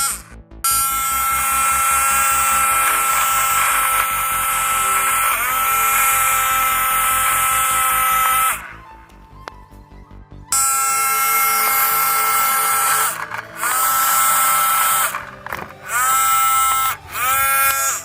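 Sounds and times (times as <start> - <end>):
toy car electric motor whining: 0.0 - 9.0, 10.5 - 18.0
music with low beat: 0.0 - 18.0.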